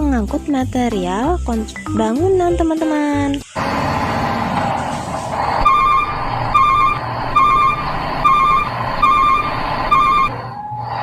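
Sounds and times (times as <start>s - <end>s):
warbling reversing beeper: 5.5s - 11.0s.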